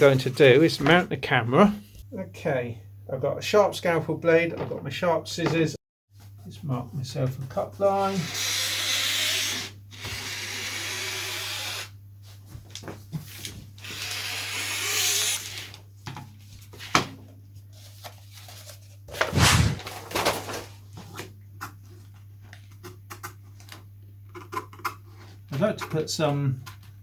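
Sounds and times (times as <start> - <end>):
hissy scraping of fabric: 19.2 - 19.9.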